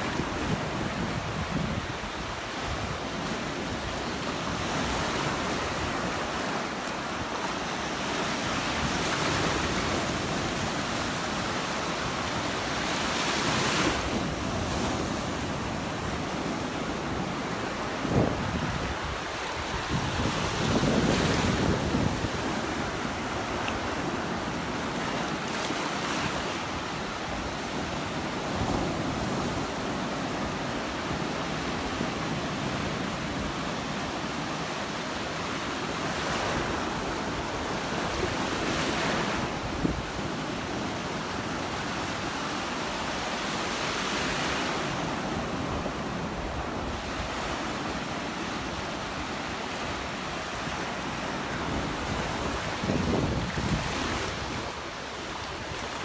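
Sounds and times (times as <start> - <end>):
wind rumbling on microphone: 0.0 - 6.3, 17.1 - 23.6, 51.4 - 56.0
surf breaking on beach: 0.0 - 56.0.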